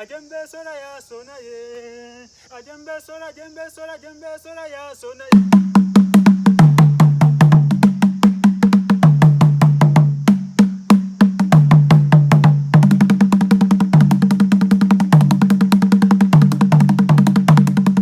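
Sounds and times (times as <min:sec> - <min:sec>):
drums in fast rhythm: 0:05.3 - 0:18.0.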